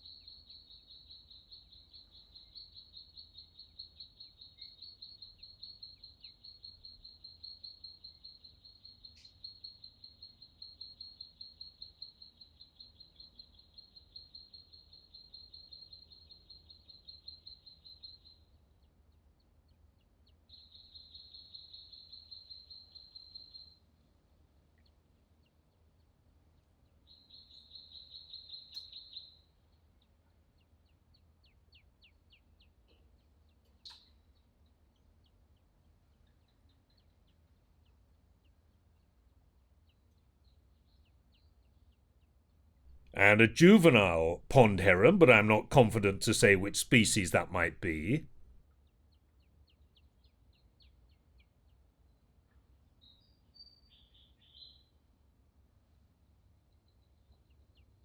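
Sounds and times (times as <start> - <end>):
faint background hiss: 43.0 - 48.5.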